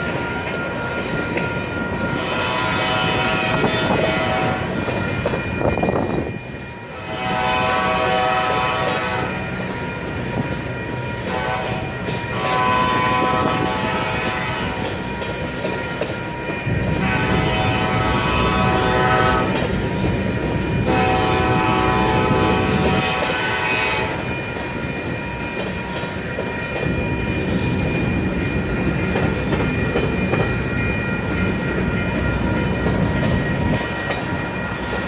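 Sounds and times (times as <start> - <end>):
freight train rumbling and clattering: 0.0 - 35.0
locomotive air horn blasts: 2.1 - 4.9, 6.9 - 9.5, 11.2 - 14.9, 16.9 - 19.6, 20.7 - 24.3.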